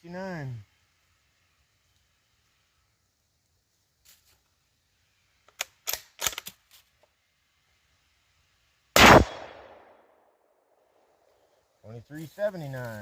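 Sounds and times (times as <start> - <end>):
rifle bolt clicking: 5.5 - 6.6
gunshot with echo: 9.0 - 10.0.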